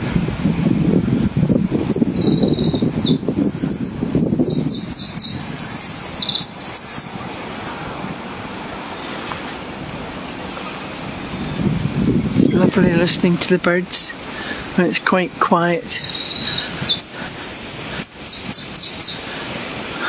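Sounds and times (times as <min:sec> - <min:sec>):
wind buffeting microphone: 0:00.0 - 0:20.0
songbird singing trills: 0:00.9 - 0:07.3, 0:12.2 - 0:19.3.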